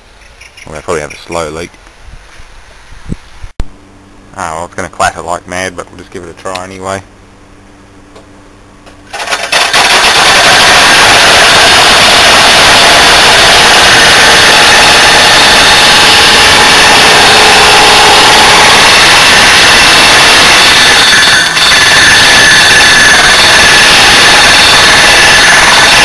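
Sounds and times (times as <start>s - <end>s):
air conditioner fan rattling: 9.0s - 13.8s.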